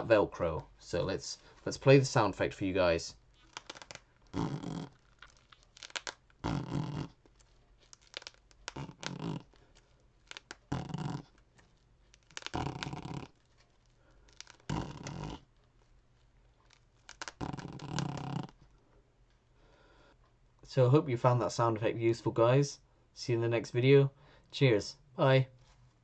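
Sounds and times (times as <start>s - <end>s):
mouth imitating velcro rips: 3.3s - 18.6s.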